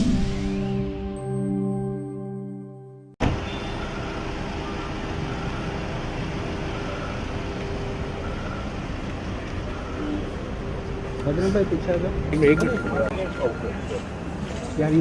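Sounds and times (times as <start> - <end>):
intro music: 0.0 - 3.1
road traffic din: 3.2 - 15.0.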